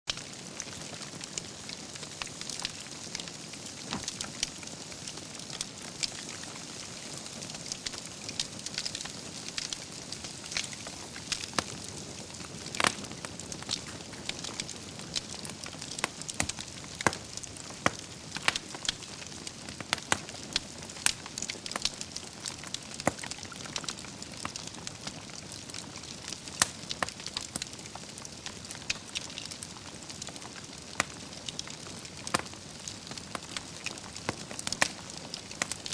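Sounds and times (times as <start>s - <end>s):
wood fire crackling: 0.1s - 35.9s.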